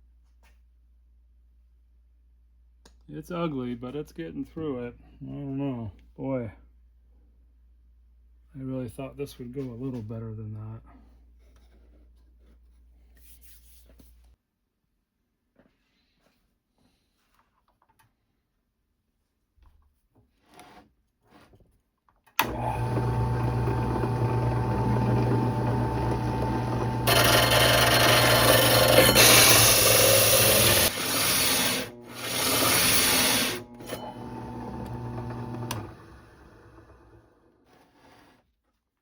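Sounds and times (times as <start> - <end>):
drill press motor humming: 22.4 - 37.5
drill bit grinding on sheet metal: 22.8 - 35.8.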